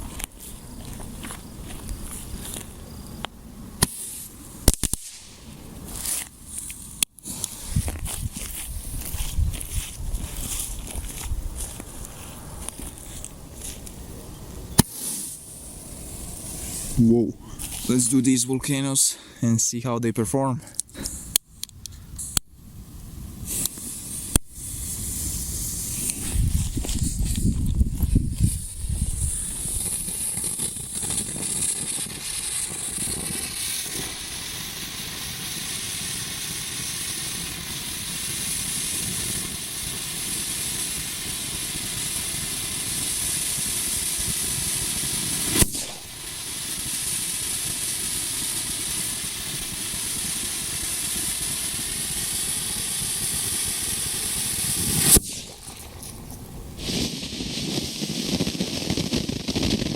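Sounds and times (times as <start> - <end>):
sharp firework crack: 0.0 - 12.1, 12.7 - 18.0, 23.3 - 59.9
firework fountains hissing: 0.0 - 18.4, 22.2 - 59.9.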